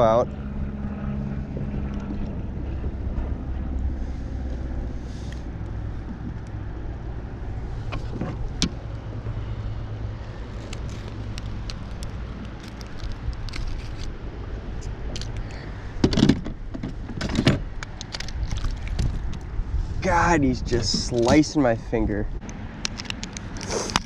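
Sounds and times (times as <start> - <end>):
boat motor rumbling: 0.0 - 22.2
sharp clicks and knocks: 22.4 - 24.0.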